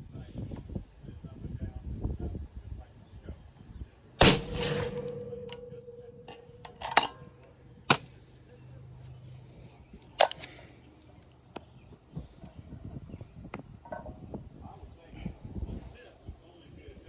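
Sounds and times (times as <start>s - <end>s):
rifle shots: 4.2s - 7.3s.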